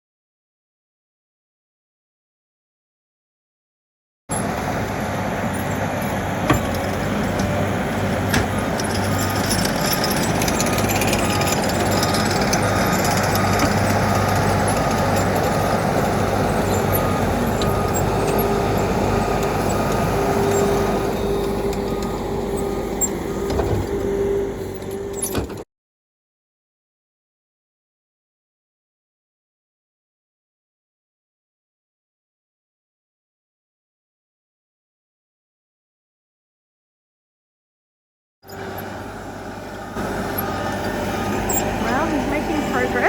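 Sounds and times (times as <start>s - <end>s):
diesel engine running under load: 4.3s - 25.6s, 38.4s - 43.0s
steady hydraulic tone: 38.5s - 43.0s.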